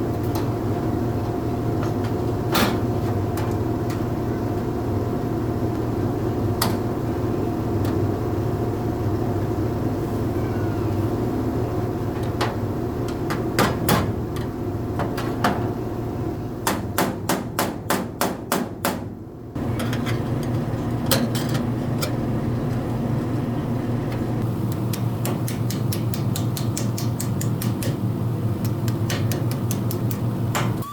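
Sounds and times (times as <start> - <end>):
hammer on sheet metal: 16.6 - 19.1, 24.9 - 28.0.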